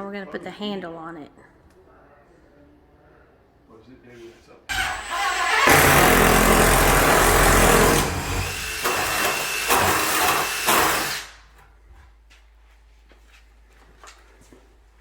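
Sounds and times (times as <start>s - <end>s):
power drill running: 4.7s - 11.4s.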